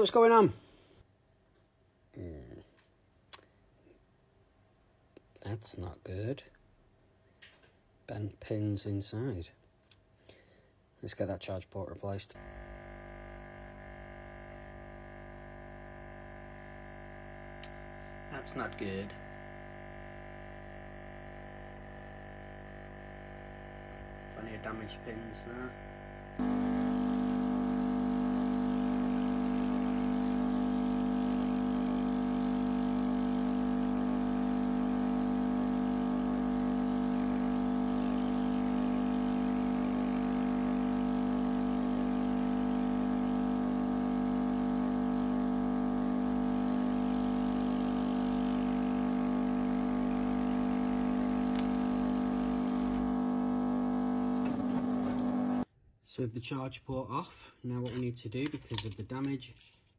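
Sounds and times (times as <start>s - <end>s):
hot air blower humming: 12.4s - 55.7s.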